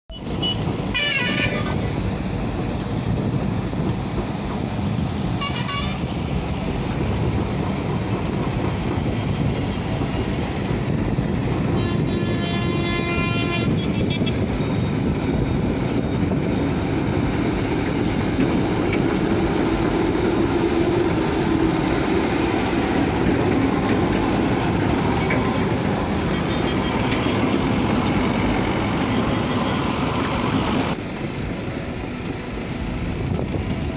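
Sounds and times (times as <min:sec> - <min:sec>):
vehicle horns honking: 0:00.1 - 0:02.0, 0:05.4 - 0:06.2, 0:11.7 - 0:14.7, 0:25.1 - 0:30.2
diesel engine running: 0:00.1 - 0:33.9.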